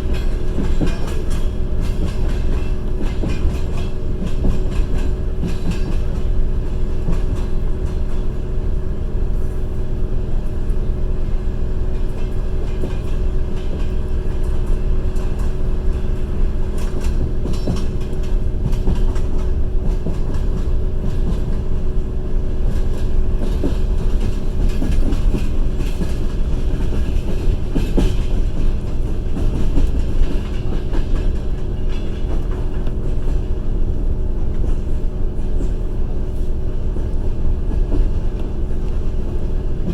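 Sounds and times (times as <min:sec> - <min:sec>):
train wheels rumbling on rails: 0:00.0 - 0:39.9
wheels clacking over track: 0:11.9 - 0:33.8.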